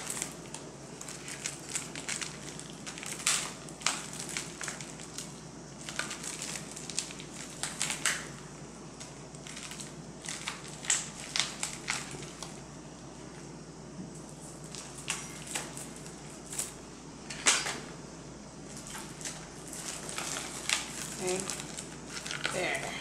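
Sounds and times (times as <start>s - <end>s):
bubble wrap crinkling: 0.0s - 13.5s, 14.1s - 16.9s, 18.6s - 23.0s.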